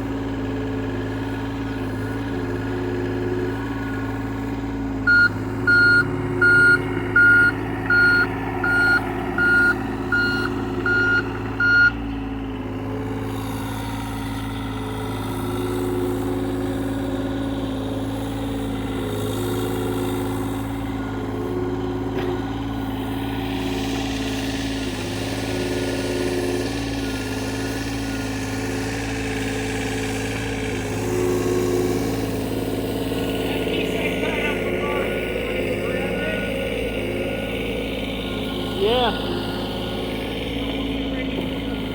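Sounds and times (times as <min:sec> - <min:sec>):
excavator diesel engine running: 0:00.0 - 0:41.9
travel alarm beeps: 0:05.1 - 0:12.0.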